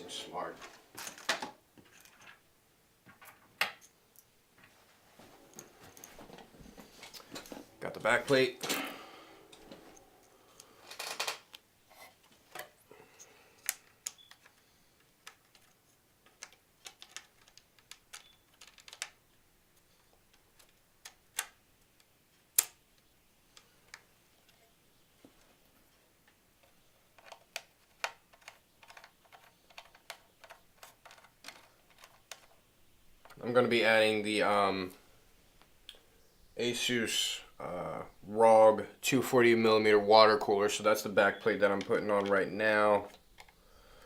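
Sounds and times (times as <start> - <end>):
small metal and plastic parts clicking: 10.5 - 11.6, 13.5 - 19.2, 26.6 - 32.6.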